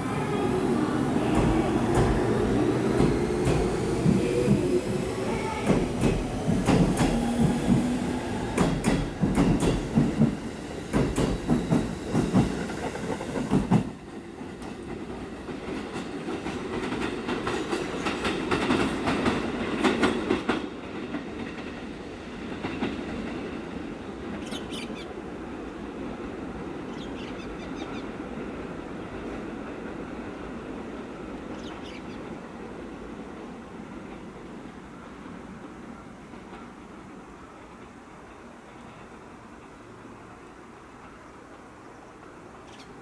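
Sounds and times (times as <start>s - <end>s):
train wheels clattering: 0.4s - 24.6s.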